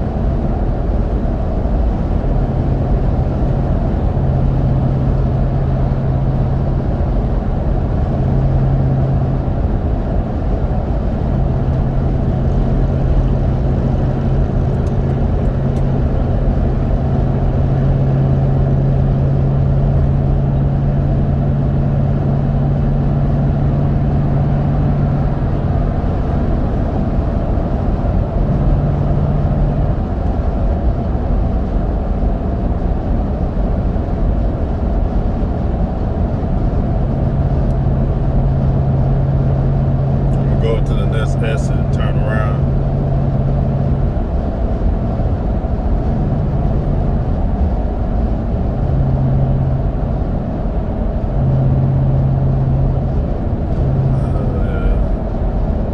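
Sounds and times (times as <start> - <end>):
tire road noise rumble: 0.0 - 30.3, 34.9 - 55.8
low hum: 36.8 - 44.0.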